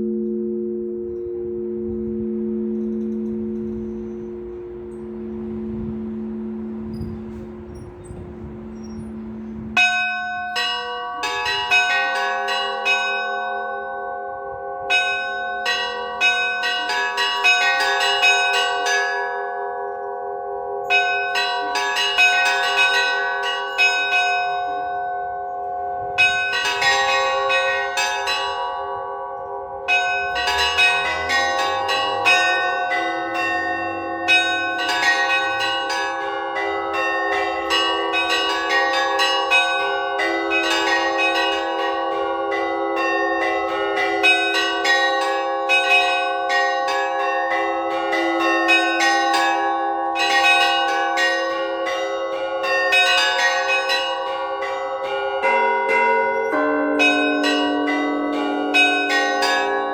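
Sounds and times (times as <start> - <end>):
deep bell ringing: 0.0 - 13.6, 21.0 - 51.3
large bells ringing: 0.0 - 59.9
small high bells striking: 2.0 - 10.8, 29.9 - 42.1.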